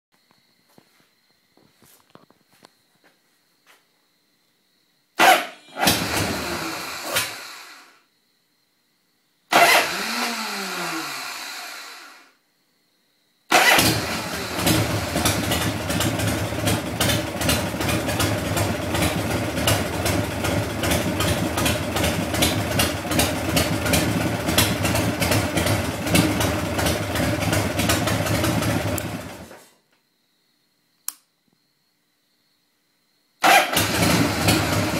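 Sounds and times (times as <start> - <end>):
motorcycle engine running: 5.2 - 7.6, 9.5 - 12.0, 13.6 - 29.6, 33.6 - 34.9
motorcycle engine starting attempts: 5.2 - 8.0, 9.5 - 12.3, 13.5 - 29.7, 33.4 - 34.9.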